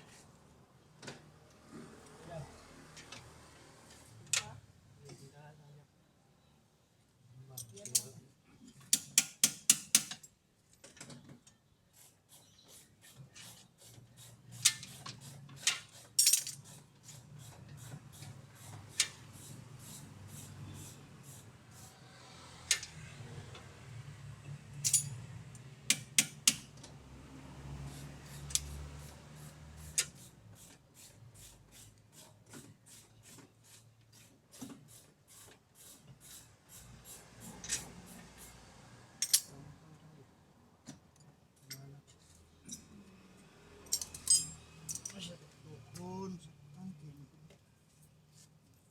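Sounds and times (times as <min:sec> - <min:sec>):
metal hand tools clinking: 0:24.8 - 0:25.2, 0:43.9 - 0:45.2.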